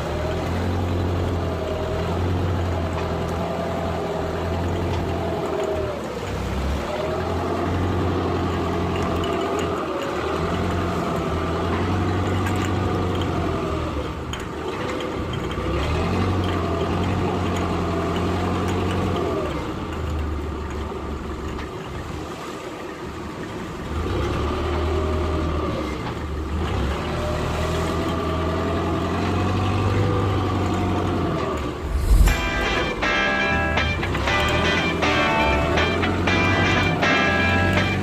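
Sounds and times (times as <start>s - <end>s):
boat engine running: 22.8s - 38.0s.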